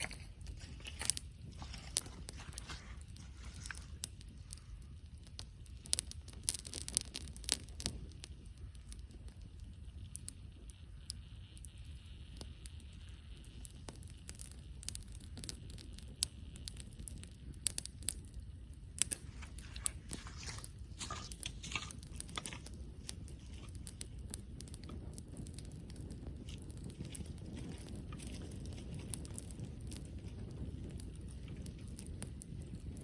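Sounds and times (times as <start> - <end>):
crunching rustling noise: 0.0 - 4.9, 19.0 - 33.0
campfire crackling and popping: 0.0 - 33.0.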